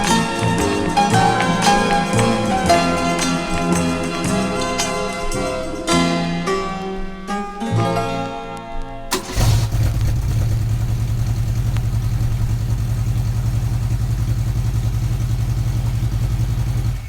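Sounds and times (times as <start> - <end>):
music: 0.0 - 9.4
petrol engine running steadily: 9.1 - 17.0.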